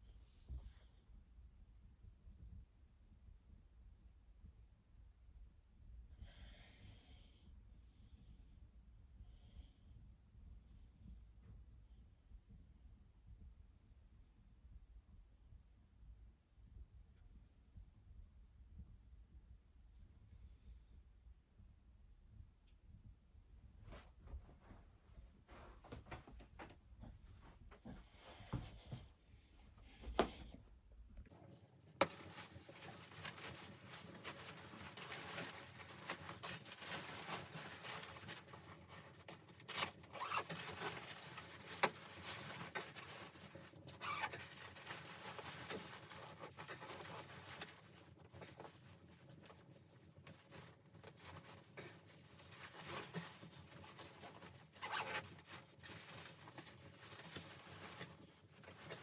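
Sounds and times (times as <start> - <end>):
rustling and handling noises: 23.8 - 29.1, 31.3 - 59.0.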